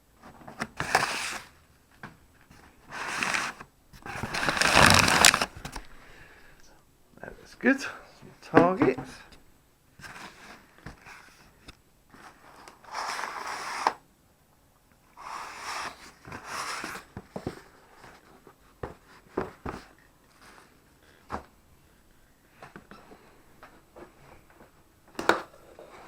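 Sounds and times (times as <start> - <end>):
packaging rustling: 2.9 - 5.9.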